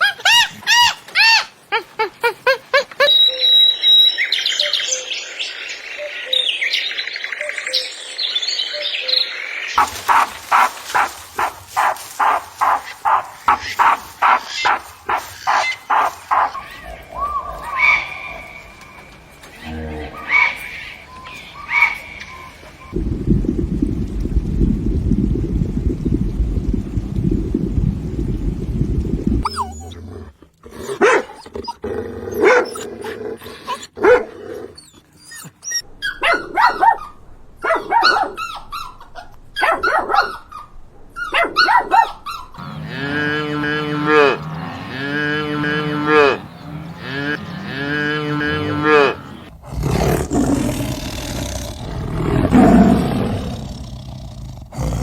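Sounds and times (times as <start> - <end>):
farm animals calling: 9.8 - 23.0, 41.6 - 51.6.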